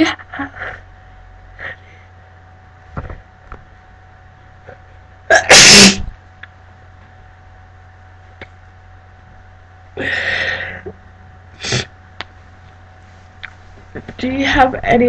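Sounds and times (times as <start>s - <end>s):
woman sneezing: 5.3s - 6.1s.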